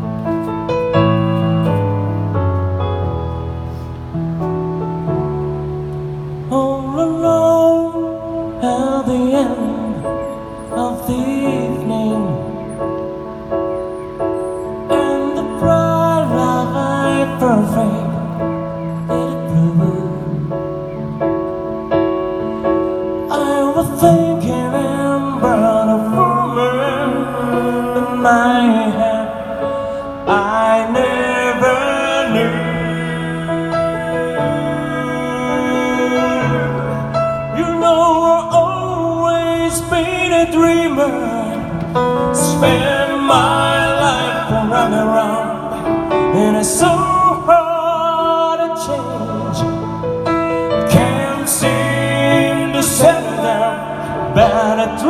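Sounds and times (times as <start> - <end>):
instrumental accompaniment: 0.0 - 6.7
person singing with vibrato: 6.1 - 55.0.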